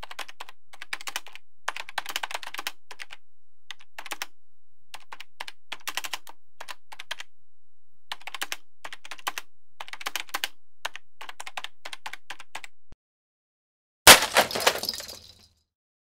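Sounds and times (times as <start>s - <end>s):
keyboard typing: 0.0s - 4.3s, 4.9s - 7.3s, 8.1s - 12.7s.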